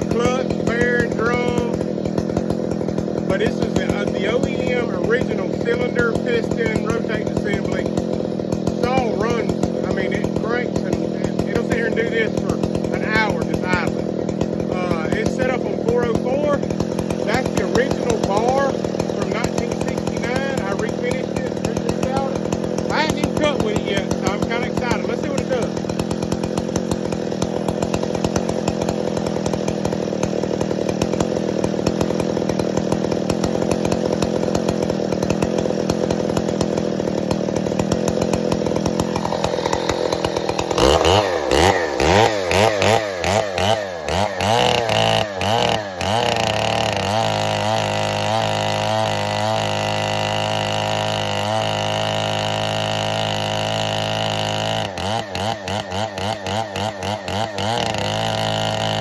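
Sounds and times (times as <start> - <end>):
chainsaw idling and revving: 0.0 - 59.0.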